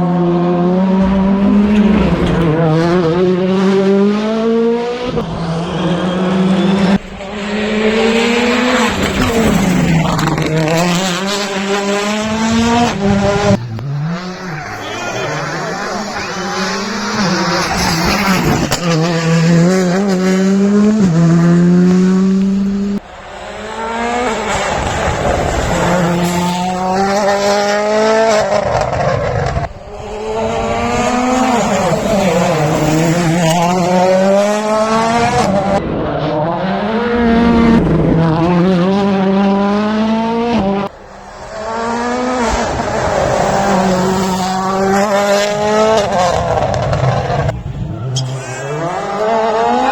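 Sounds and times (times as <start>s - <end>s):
rally car engines revving hard: 0.0s - 49.9s
tyre squeal: 12.7s - 19.1s, 47.0s - 49.9s.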